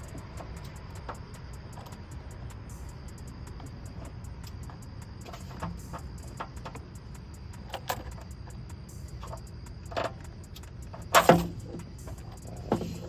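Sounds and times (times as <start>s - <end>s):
steady low hum: 0.0s - 13.0s
clicks and knocks of tools: 3.6s - 6.9s, 7.6s - 13.0s.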